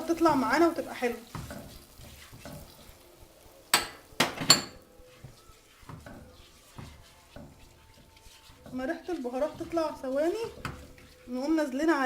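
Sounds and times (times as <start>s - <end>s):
spices frying in oil: 0.0s - 12.0s
spoon clinking on pot: 3.7s - 4.9s.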